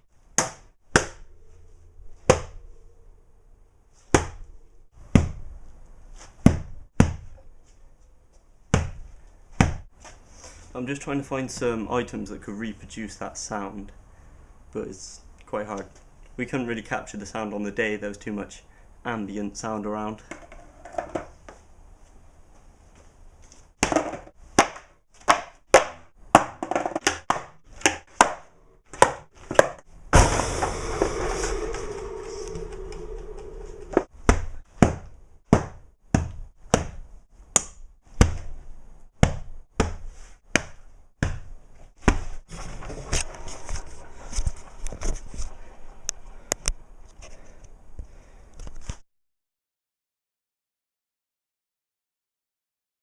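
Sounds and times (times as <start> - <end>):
loud continuous rushing noise: 30.2 - 34.1
sharp whacks: 30.2 - 34.4.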